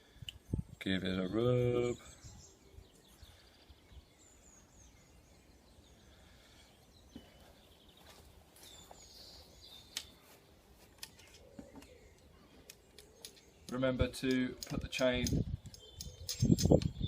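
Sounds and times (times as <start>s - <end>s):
soft clicks: 9.9s - 10.2s.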